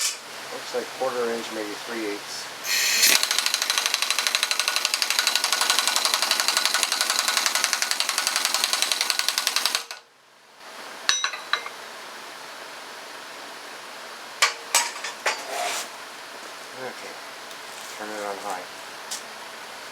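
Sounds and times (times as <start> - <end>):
impact wrench hammering: 2.7 - 10.0, 11.1 - 11.7.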